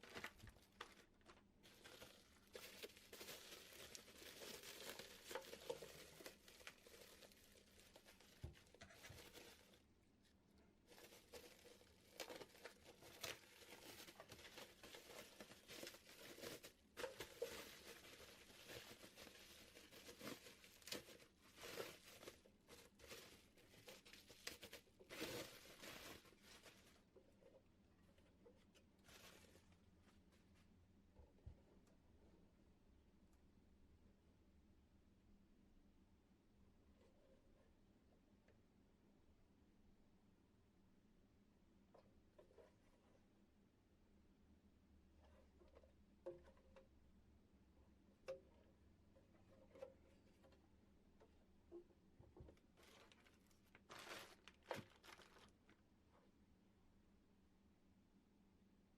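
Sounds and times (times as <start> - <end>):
packaging rustling: 0.0 - 9.8, 10.9 - 27.1, 52.7 - 55.8.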